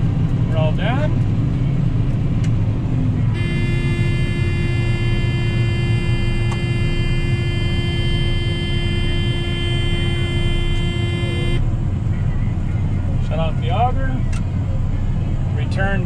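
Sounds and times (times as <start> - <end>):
combine engine drone: 0.0 - 16.0
warning buzzer tone: 3.4 - 11.6.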